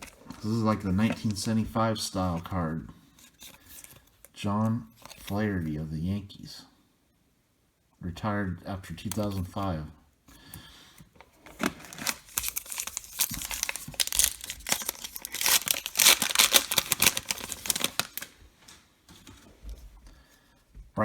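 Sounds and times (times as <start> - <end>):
wrapper tearing and crinkling: 11.5 - 18.4.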